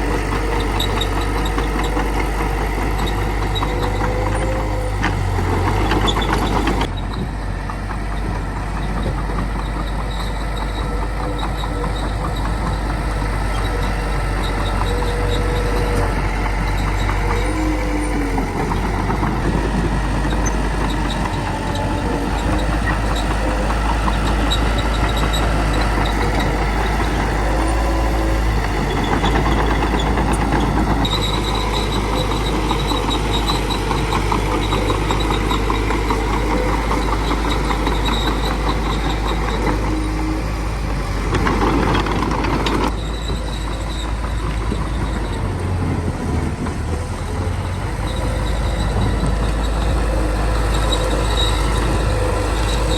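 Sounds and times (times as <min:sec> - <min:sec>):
bulldozer diesel engine running: 0:00.0 - 0:52.9
brief squeals: 0:41.4 - 0:45.8, 0:47.6 - 0:52.9.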